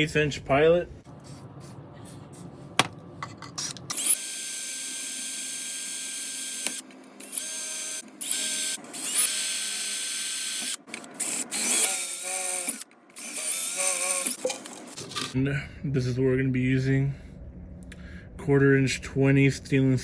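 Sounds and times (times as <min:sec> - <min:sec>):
drill clicks: 0:03.9 - 0:14.4
electric drill whining: 0:03.9 - 0:14.4.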